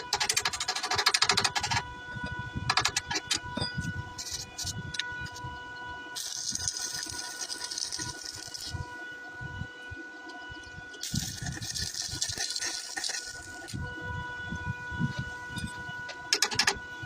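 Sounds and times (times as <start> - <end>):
welding crackling and clicks: 0.0 - 1.9, 6.2 - 8.9, 10.3 - 13.8
electrical hum: 0.0 - 17.0.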